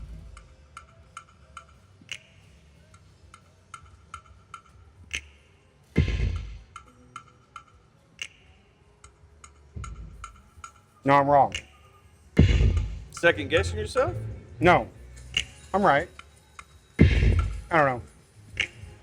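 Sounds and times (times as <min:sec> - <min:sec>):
low thud: 0:12.4 - 0:13.1, 0:17.0 - 0:17.7.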